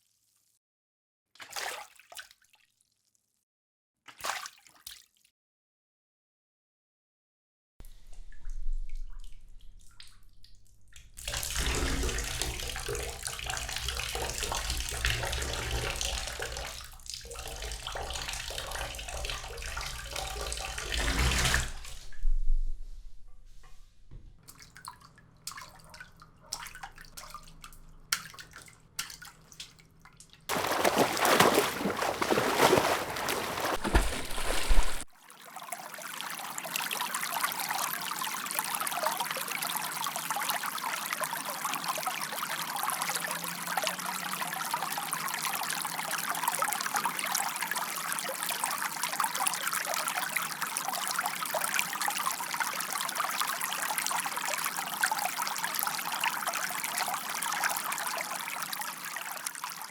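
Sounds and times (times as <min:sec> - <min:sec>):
water drips and small splashes: 0:01.4 - 0:03.2, 0:04.1 - 0:05.3, 0:08.1 - 0:21.9, 0:24.4 - 0:59.9
water pouring: 0:11.3 - 0:21.8, 0:30.5 - 0:35.1
water trickling: 0:30.5 - 0:35.1.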